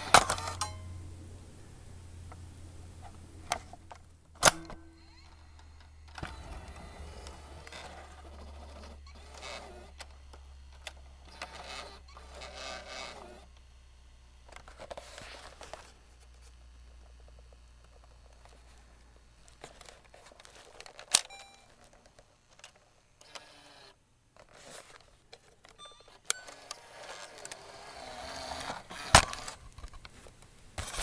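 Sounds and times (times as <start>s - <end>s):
plastic cassette click: 0.0s - 0.7s, 3.5s - 12.5s, 19.4s - 23.6s, 24.4s - 31.0s
cassette mechanism clattering: 0.0s - 1.0s, 3.5s - 13.2s, 24.4s - 30.1s
low steady hum: 0.0s - 9.1s.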